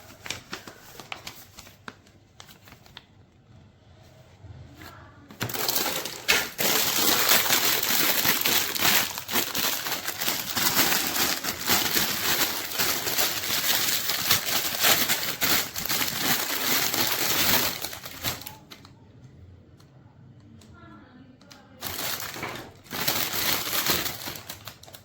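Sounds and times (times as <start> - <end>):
dense crinkling and crackling: 0.0 - 3.2, 4.8 - 18.9, 21.6 - 25.0.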